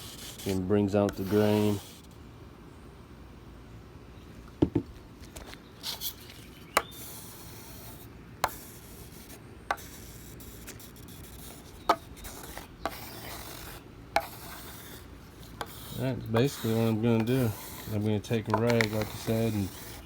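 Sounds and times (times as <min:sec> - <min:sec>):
putty knife scraping on wood: 0:11.4 - 0:20.0.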